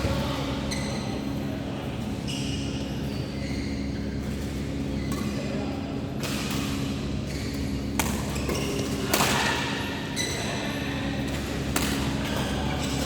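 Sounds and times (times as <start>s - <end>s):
steady low hum: 0.0s - 13.0s
racket hitting shuttlecock: 7.9s - 9.7s, 11.7s - 12.2s.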